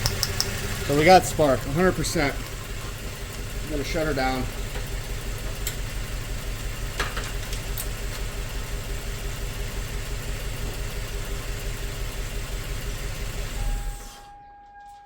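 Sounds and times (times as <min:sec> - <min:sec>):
engine idling with a miss: 0:00.0 - 0:15.0.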